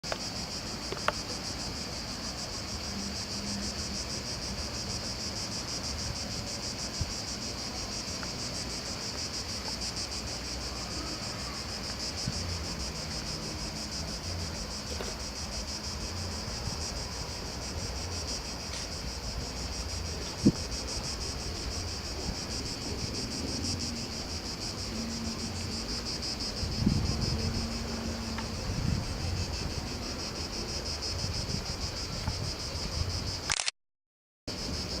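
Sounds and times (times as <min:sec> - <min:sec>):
insects chirping: 0:00.0 - 0:33.7, 0:34.5 - 0:35.0
wind: 0:00.0 - 0:33.8, 0:34.5 - 0:35.0
sharp click: 0:33.4 - 0:33.7.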